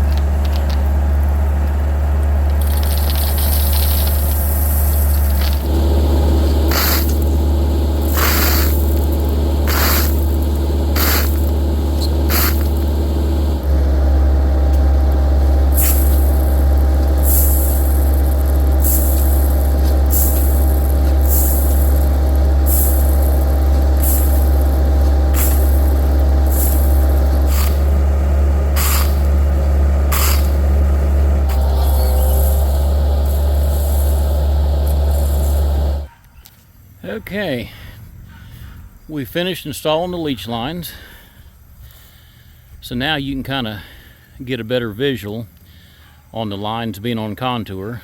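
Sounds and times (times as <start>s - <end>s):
diesel engine running: 0.0s - 36.1s
short hissing bursts: 2.6s - 13.0s, 15.7s - 28.0s, 28.7s - 29.4s, 30.1s - 30.7s, 31.6s - 36.0s.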